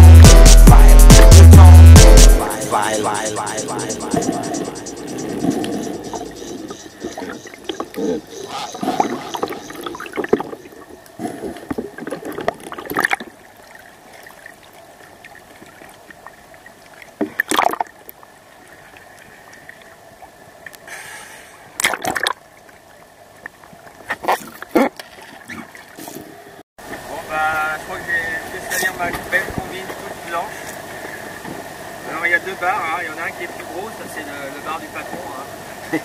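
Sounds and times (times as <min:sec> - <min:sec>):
water gurgling and splashing: 0:04.0 - 0:18.5.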